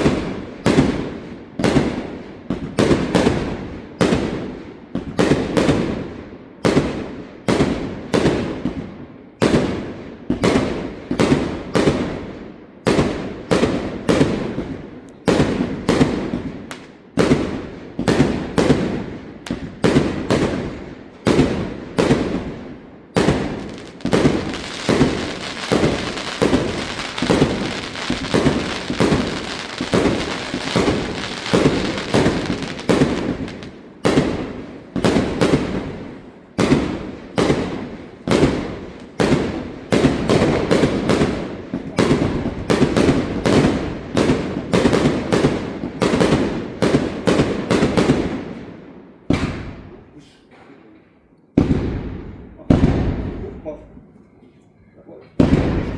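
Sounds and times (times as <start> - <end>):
firework crackling: 15.2 - 48.3
firework shells bursting: 23.1 - 36.0.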